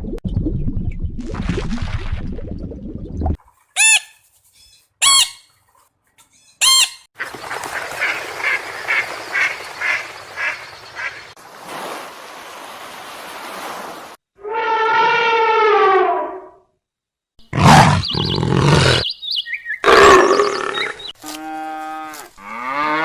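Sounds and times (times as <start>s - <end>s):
waterfowl honking: 3.8s - 4.2s, 6.6s - 11.3s.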